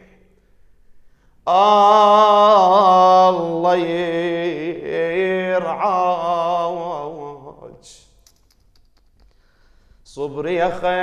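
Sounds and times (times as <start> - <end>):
man chanting a lament: 1.5 - 8.0, 10.1 - 11.0.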